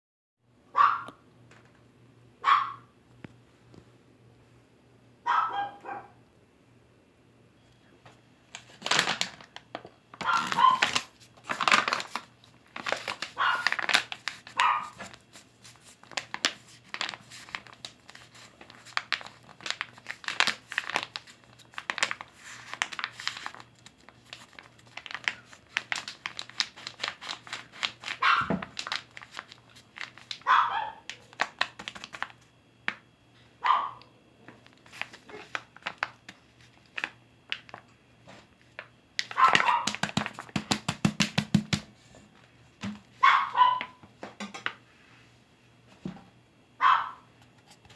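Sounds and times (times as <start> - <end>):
small dog yipping: 0.7 - 1.2, 2.4 - 2.9, 5.2 - 6.1, 10.2 - 11.0, 14.6 - 15.0, 28.2 - 28.5, 30.4 - 31.0, 33.6 - 34.0, 39.4 - 39.9, 43.2 - 44.0, 46.8 - 47.2
packaging crinkling and rustling: 8.5 - 30.5, 31.1 - 33.0, 34.5 - 43.2.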